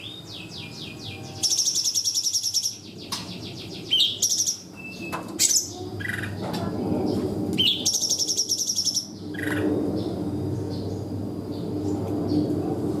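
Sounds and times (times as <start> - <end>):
songbird singing rapid high notes: 0.0 - 6.2.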